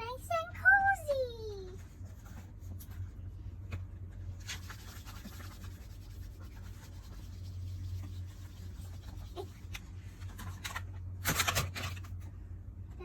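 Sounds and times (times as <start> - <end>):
steady low hum: 0.0 - 13.0
scratching and rubbing: 4.3 - 10.8.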